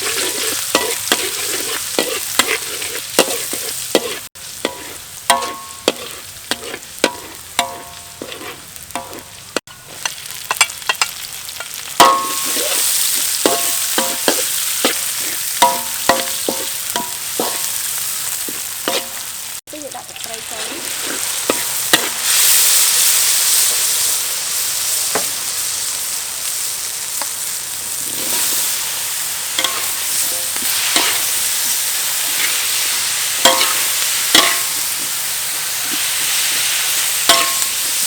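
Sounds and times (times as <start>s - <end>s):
metal spatula striking a pan: 0.0s - 19.3s, 21.4s - 22.3s, 29.6s - 31.3s, 33.4s - 35.2s, 37.2s - 38.0s
food sizzling in a metal pan: 0.0s - 38.0s.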